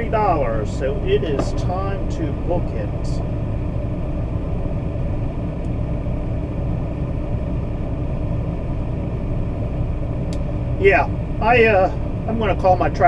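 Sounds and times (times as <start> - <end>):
vehicle engine idling: 0.0 - 13.0.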